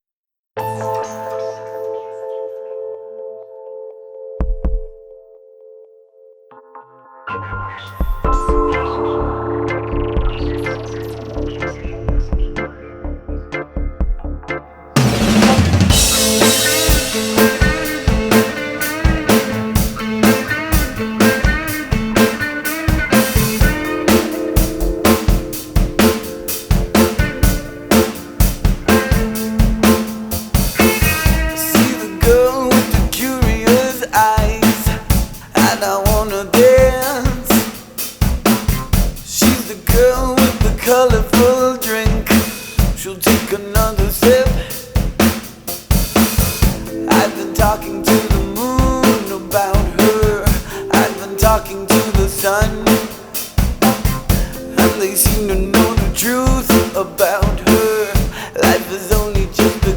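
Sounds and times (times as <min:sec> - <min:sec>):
bending melodic lead line: 0:00.6 - 0:37.5, 0:46.1 - 0:59.9
rock drum beat: 0:04.4 - 0:05.0, 0:15.0 - 0:59.9
sustained bass notes: 0:07.3 - 0:35.4, 0:46.0 - 0:59.9.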